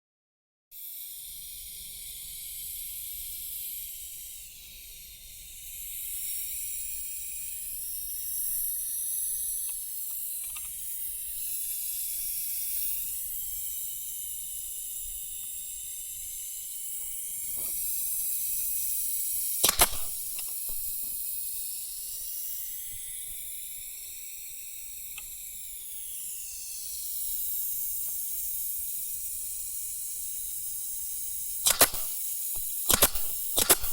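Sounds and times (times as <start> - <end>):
compressed air hissing: 0.8 - 33.9
nail gun firing crack: 19.6 - 21.2, 31.6 - 33.9.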